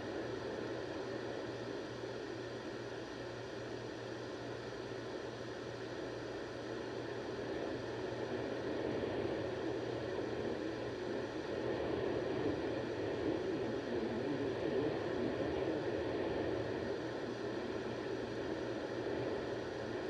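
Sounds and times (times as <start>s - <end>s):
radio static hiss: 13.2s - 17.9s.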